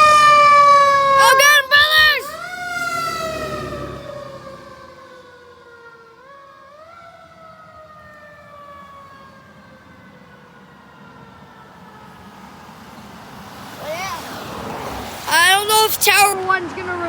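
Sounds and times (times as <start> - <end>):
fire engine siren wailing: 0.0 - 12.9.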